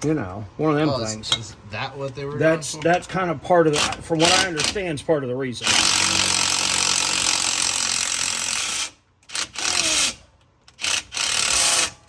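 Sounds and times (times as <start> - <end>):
impact wrench running: 3.7 - 4.8, 5.6 - 12.0.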